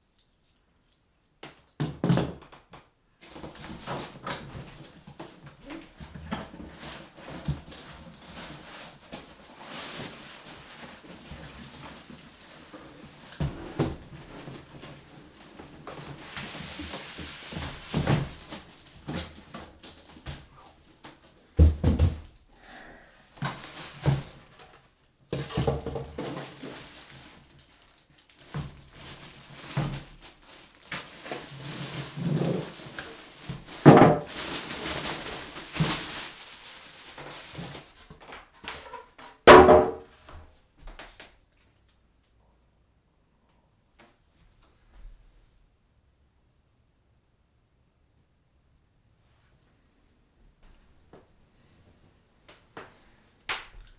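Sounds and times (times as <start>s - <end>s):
packaging rustling: 3.2s - 21.3s, 26.0s - 39.2s
knocks and thunks of handling: 17.2s - 22.4s, 25.3s - 26.6s, 39.5s - 40.1s.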